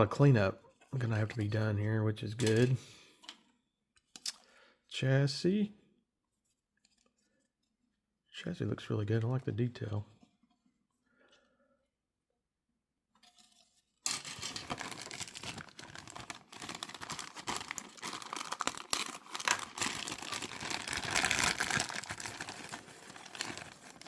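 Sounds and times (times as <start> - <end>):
plastic packaging crinkling: 14.1 - 24.0.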